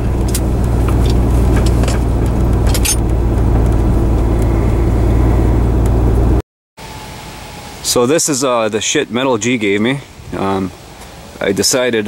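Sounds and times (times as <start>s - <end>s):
vehicle engine and road rumble: 0.0s - 8.1s.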